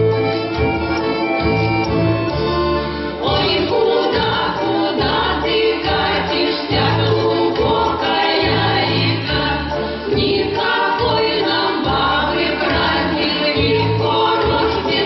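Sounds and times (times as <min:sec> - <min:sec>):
instrumental accompaniment: 0:00.0 - 0:15.0
choir singing: 0:03.2 - 0:15.0.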